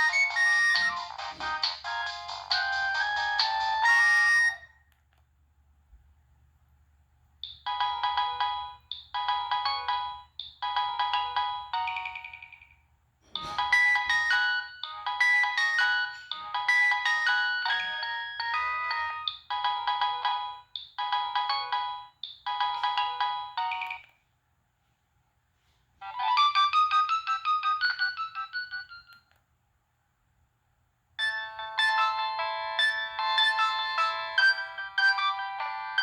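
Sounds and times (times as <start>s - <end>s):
mobile phone ringtone melody: 0.0s - 4.7s, 7.6s - 12.7s, 13.4s - 24.1s, 26.0s - 29.2s, 31.2s - 36.0s.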